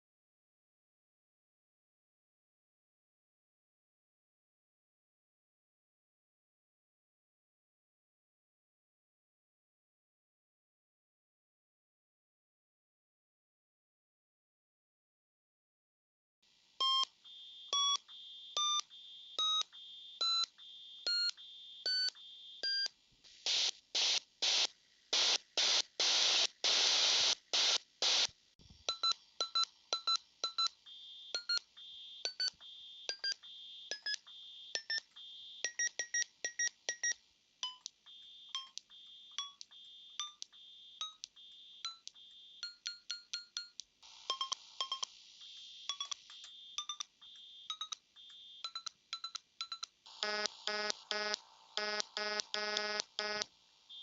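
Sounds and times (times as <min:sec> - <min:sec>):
hiss-like noise bursts: 0:23.3 - 0:28.4
square-wave beeps: 0:28.9 - 0:54.0.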